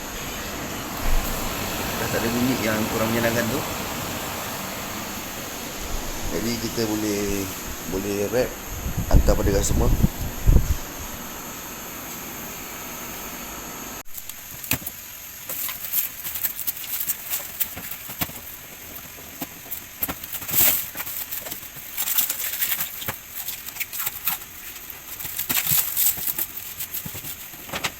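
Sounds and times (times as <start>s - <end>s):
air conditioner humming: 0.0s - 27.9s
steady high hiss: 0.0s - 27.9s
crackling and rustling: 14.0s - 27.9s.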